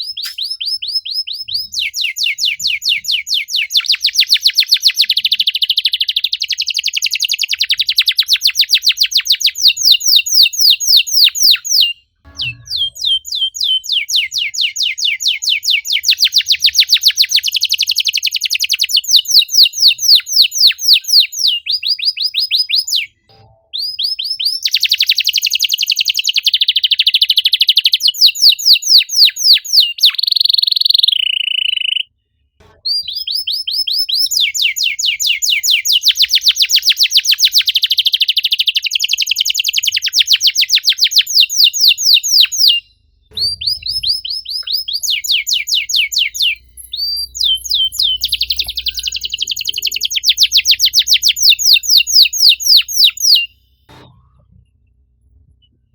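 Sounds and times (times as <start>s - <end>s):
canary singing trills: 0.0s - 53.9s.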